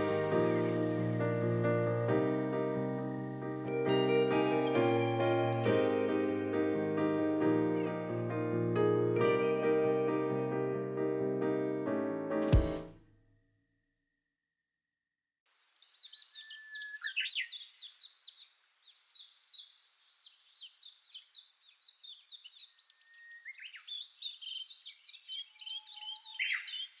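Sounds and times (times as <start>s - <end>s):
songbirds chirping and trilling: 15.6s - 27.0s.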